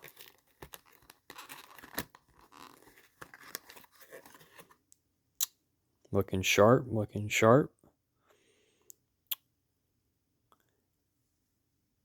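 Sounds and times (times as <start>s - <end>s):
packaging rustling and scraping: 0.0s - 4.8s.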